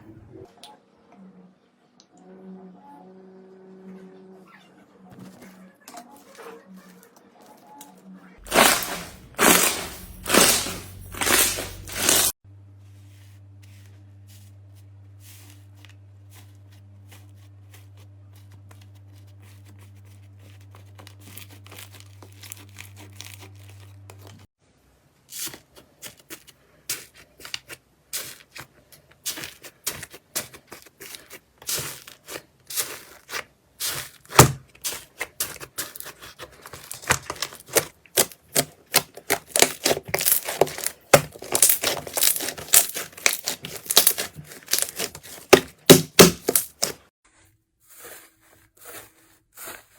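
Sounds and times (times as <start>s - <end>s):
slime tearing and stretching: 8.4s - 12.3s, 20.5s - 24.4s, 29.3s - 47.0s
slime crackling and popping: 29.3s - 47.0s.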